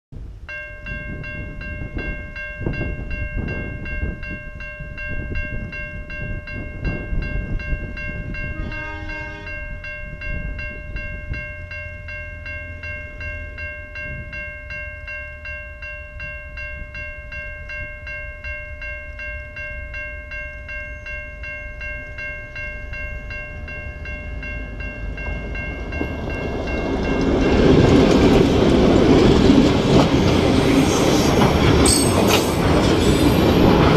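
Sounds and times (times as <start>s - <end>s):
multi-tone warning signal: 8.5s - 9.8s
train rumble: 22.9s - 33.9s.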